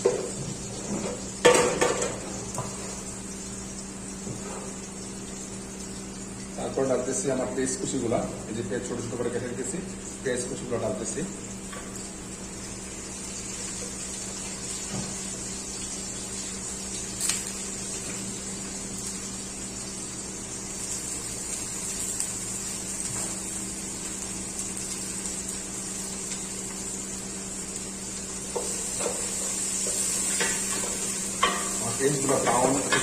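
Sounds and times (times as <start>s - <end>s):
constant low hum: 0.0s - 33.0s
onions sizzling in frying pan: 0.0s - 33.0s.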